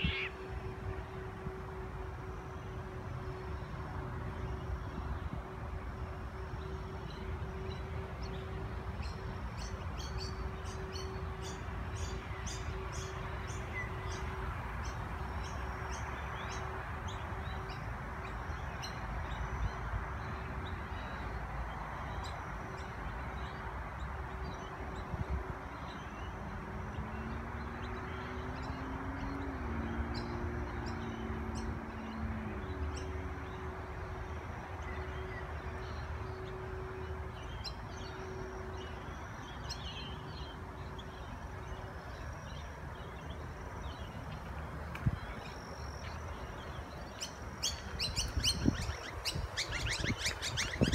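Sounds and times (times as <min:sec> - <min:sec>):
outdoor background hiss: 0:00.0 - 0:50.9
small birds chirping: 0:39.2 - 0:50.9.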